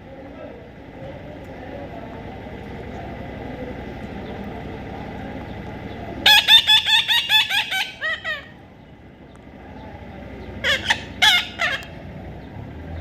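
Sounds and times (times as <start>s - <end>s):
parrot squawking: 6.2s - 8.6s, 10.6s - 12.0s.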